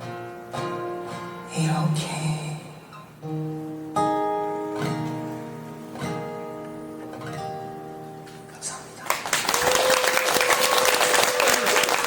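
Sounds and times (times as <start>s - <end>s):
acoustic guitar chords: 0.0s - 9.0s
audience applause: 9.0s - 12.0s
audience cheering: 9.3s - 12.0s.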